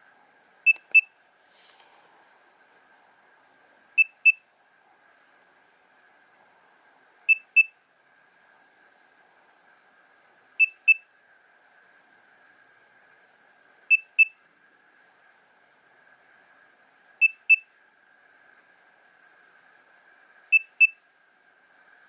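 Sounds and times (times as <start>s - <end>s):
faint steady hiss: 0.0s - 22.0s.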